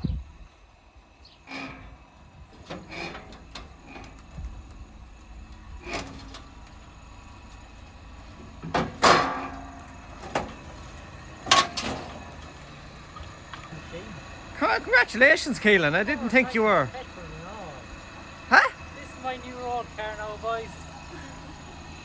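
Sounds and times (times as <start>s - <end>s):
car doors shutting: 1.5s - 12.6s.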